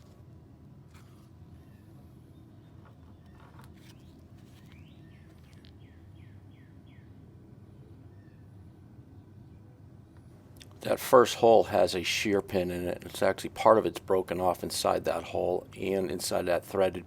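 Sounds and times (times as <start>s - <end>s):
low background hum: 0.0s - 17.0s
bird chirping: 1.6s - 9.6s.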